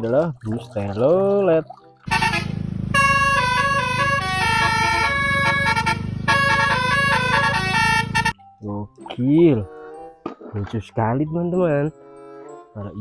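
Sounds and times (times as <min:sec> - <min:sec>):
bus horn melody: 0:02.1 - 0:08.4.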